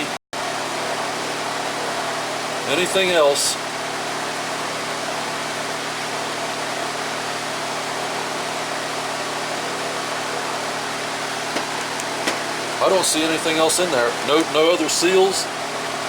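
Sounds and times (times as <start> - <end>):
fan air hiss: 0.0 - 16.0
fan motor hum: 0.0 - 16.0.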